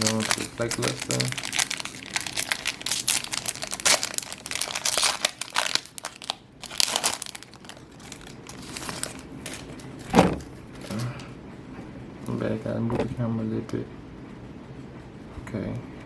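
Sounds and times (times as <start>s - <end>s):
foil wrapper crinkling: 0.0s - 10.1s
short thump: 10.1s - 10.5s.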